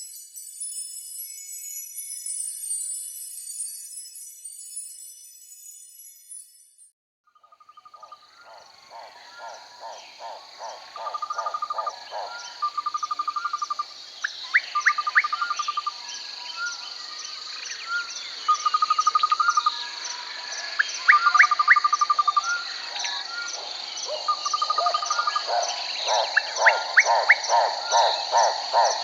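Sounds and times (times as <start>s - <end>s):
insect chorus: 7.3s - 29.0s
rising whistled bird calls: 20.8s - 29.0s.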